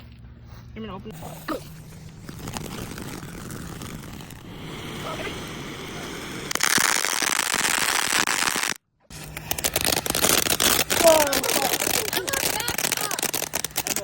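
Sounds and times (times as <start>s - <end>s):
firework hissing: 1.2s - 14.0s
firework crackling pops: 1.6s - 14.0s.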